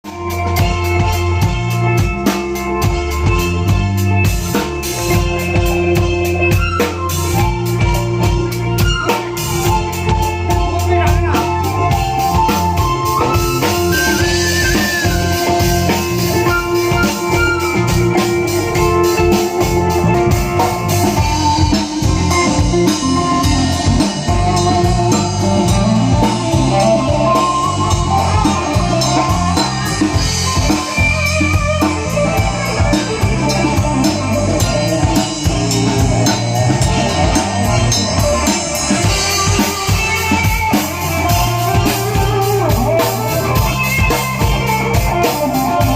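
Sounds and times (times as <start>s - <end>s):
band playing loud music: 0.0s - 45.9s
steady drum beat: 0.0s - 45.9s.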